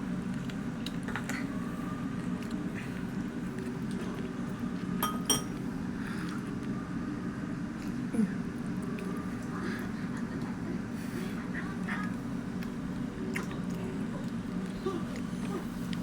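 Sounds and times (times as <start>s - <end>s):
low room hum: 0.0s - 16.0s
sharp ringing clink: 5.0s - 5.5s
utensils tapping dishes: 5.0s - 5.5s.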